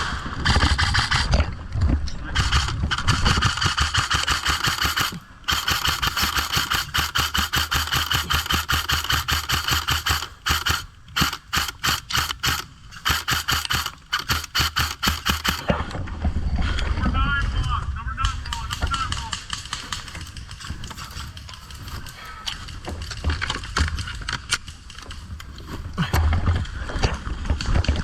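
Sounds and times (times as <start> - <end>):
airsoft rifle firing bursts: 0.4 - 1.4, 2.4 - 15.8, 18.5 - 20.2.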